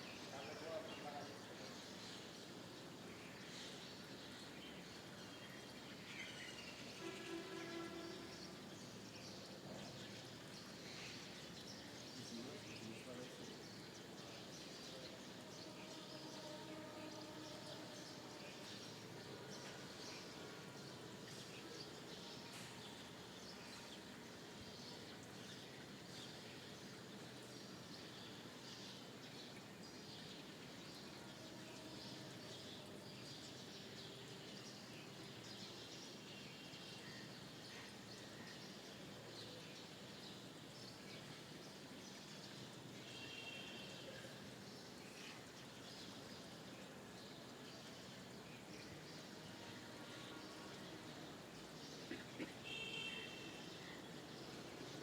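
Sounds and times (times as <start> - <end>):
steady background hiss: 0.0 - 55.0
small birds chirping: 24.8 - 55.0.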